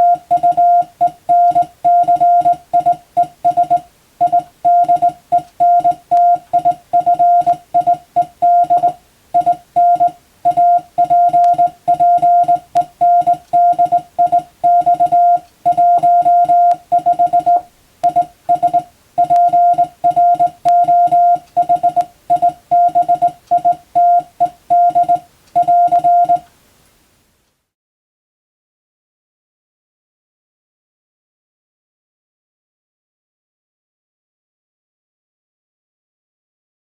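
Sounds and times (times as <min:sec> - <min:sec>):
morse code tone: 0:00.0 - 0:26.5.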